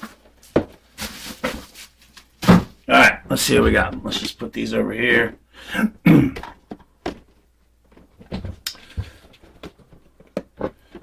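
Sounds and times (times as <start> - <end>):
cardboard rustling: 0.0 - 4.4, 6.4 - 11.0.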